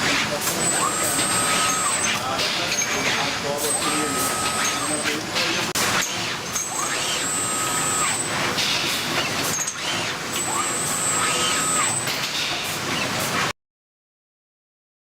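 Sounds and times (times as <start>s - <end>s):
steady mechanical noise: 0.0s - 13.6s
motor whine: 0.4s - 2.4s, 3.6s - 5.2s, 5.8s - 12.1s.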